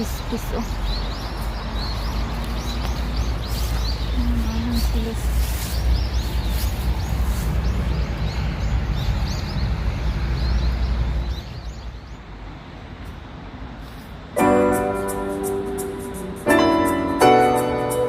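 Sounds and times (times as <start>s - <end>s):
small birds chirping: 0.0s - 12.6s
piano music: 14.4s - 18.0s.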